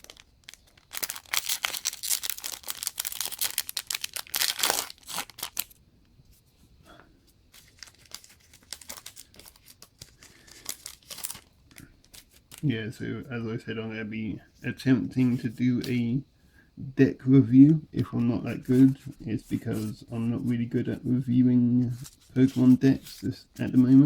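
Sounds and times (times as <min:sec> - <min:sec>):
cards rustling: 0:00.0 - 0:05.8, 0:07.5 - 0:12.8, 0:18.0 - 0:21.1, 0:21.8 - 0:24.0
foil wrapper tearing and crinkling: 0:00.0 - 0:05.8, 0:07.6 - 0:12.6.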